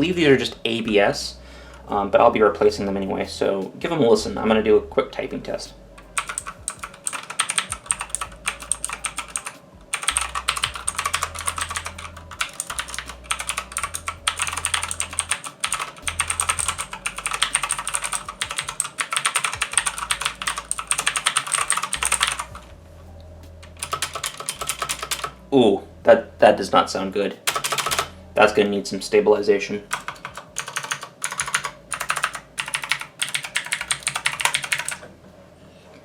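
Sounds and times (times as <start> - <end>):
fast clicky keyboard typing: 6.0 - 22.6, 23.7 - 25.4, 27.5 - 28.1, 29.9 - 35.0.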